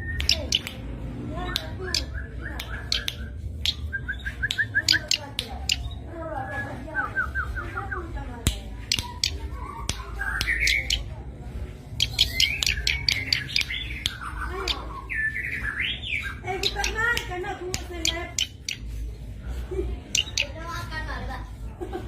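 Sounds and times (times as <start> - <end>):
bird clicking and chirping: 0.0 - 6.1, 8.4 - 11.2, 11.8 - 19.1, 20.0 - 20.9.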